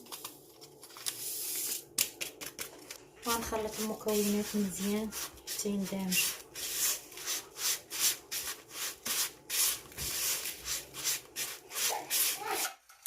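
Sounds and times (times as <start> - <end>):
gritty scraping in a bowl: 3.3 - 12.8.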